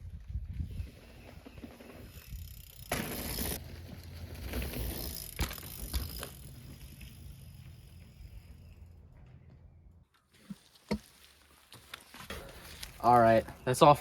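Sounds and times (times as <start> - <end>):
low rumble of bike in motion: 0.0 - 10.4.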